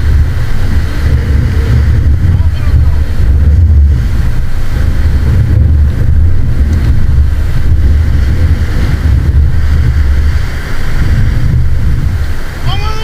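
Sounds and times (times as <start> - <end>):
surf: 0.0 - 13.0
wind buffeting microphone: 0.0 - 13.0.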